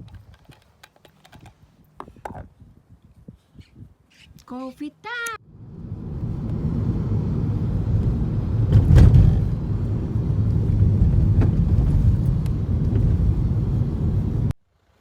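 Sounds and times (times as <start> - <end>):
car driving on road rumble: 5.4 - 15.0
car bump: 8.6 - 9.6.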